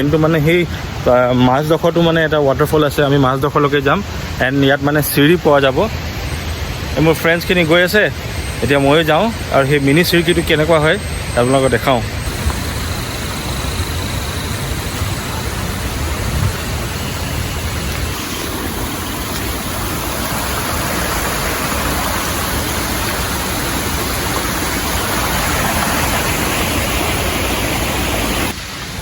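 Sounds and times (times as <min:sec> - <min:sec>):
fast-flowing stream water: 0:00.0 - 0:29.0
low rumbling: 0:08.0 - 0:29.0.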